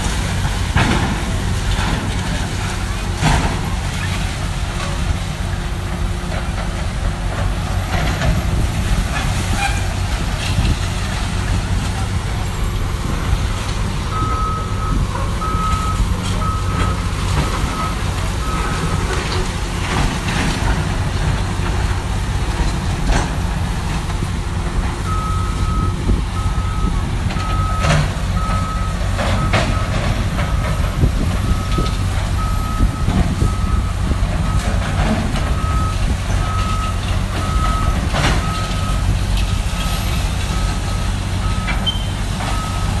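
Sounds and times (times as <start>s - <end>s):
heavy machinery engine rumble: 0.0s - 43.0s
reversing alarm beeps: 14.0s - 19.1s, 25.0s - 30.8s, 31.4s - 34.8s, 35.4s - 39.1s, 39.8s - 43.0s.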